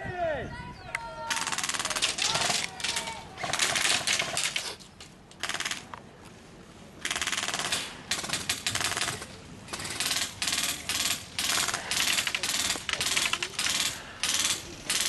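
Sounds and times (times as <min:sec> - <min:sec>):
airsoft rifle firing bursts: 0:05.4 - 0:05.8, 0:07.0 - 0:15.0.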